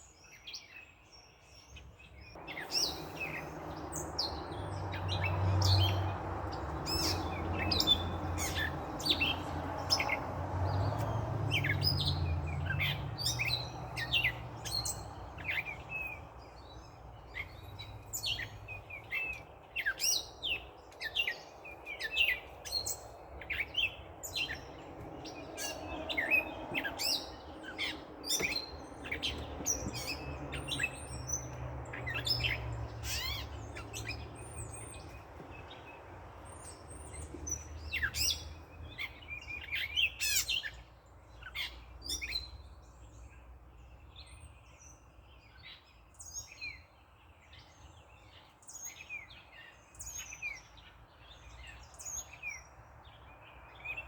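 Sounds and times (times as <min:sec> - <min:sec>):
songbirds chirping: 0:00.0 - 0:54.0
passing traffic rumble: 0:02.3 - 0:45.5.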